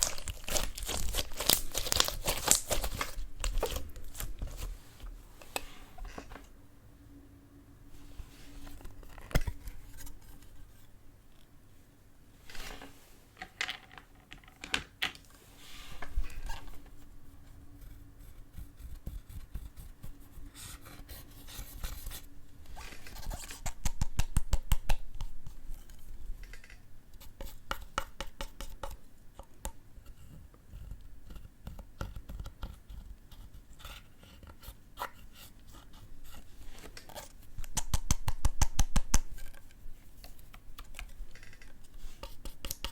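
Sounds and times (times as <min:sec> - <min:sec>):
slime scraping: 0:00.0 - 0:04.9.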